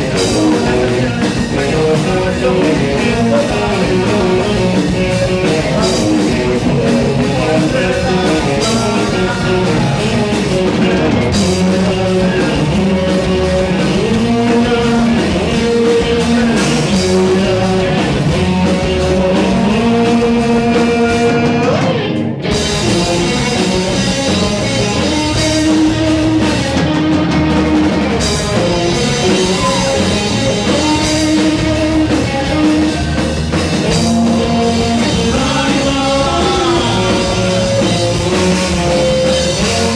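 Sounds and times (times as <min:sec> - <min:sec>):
rock band playing live: 0:00.0 - 0:39.9.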